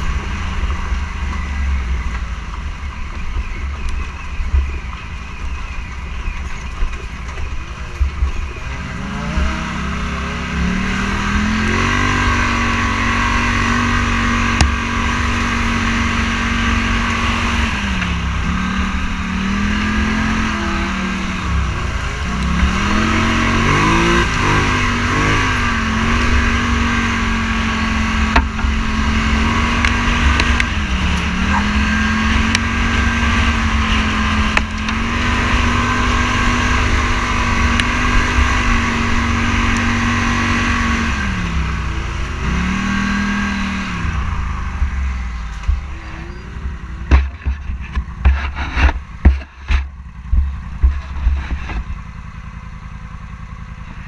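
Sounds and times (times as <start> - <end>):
off-road vehicle engine revving: 0.0 - 54.0.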